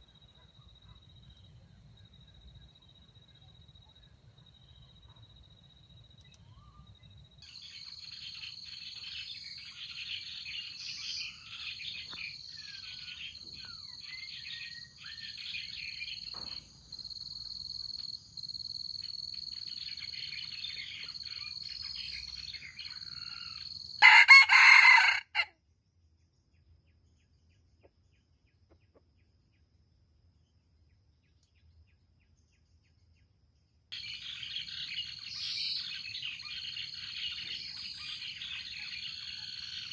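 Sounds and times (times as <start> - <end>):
small birds chirping: 0.0 - 24.2, 26.0 - 39.9
rooster crowing: 23.2 - 25.5.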